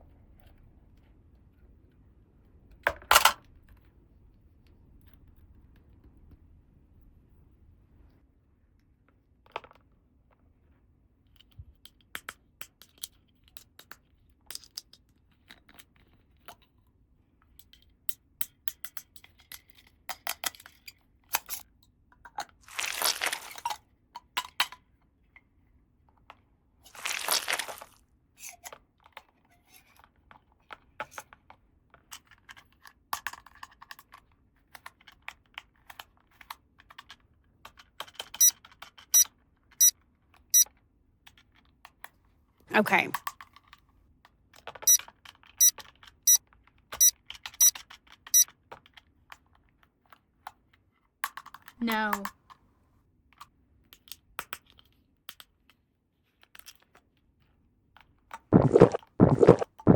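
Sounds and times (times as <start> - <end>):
packaging tearing: 22.7 - 23.6, 27.0 - 27.9.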